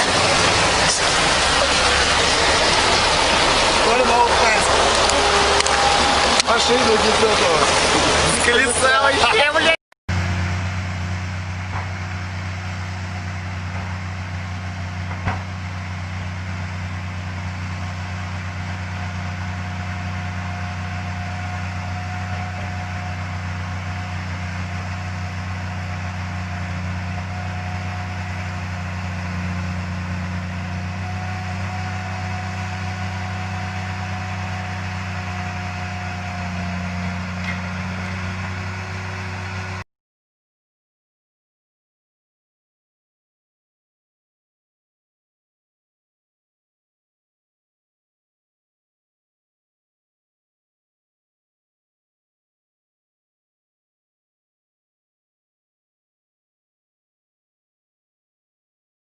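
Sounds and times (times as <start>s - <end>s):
heavy engine droning: 0.0s - 39.9s.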